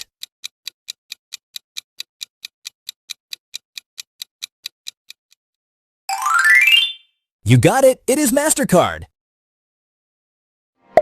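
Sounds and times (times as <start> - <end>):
countdown timer ticking: 0.0 - 5.4.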